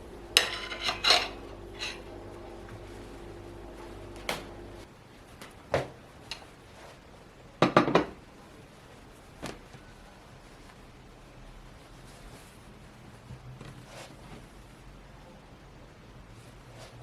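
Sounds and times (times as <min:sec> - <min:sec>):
steady low hum: 0:00.0 - 0:04.9
kitchenware clinking and knocking: 0:00.3 - 0:02.3.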